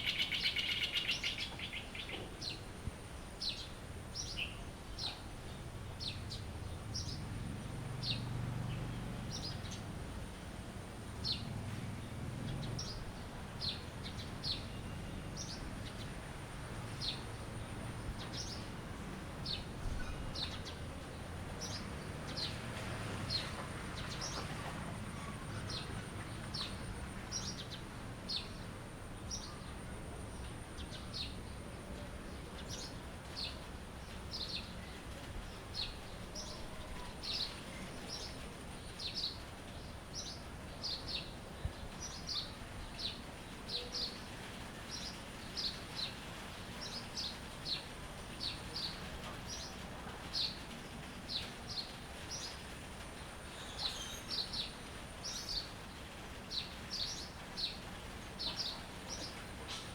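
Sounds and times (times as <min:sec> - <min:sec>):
bird chirping: 0:00.0 - 0:02.6.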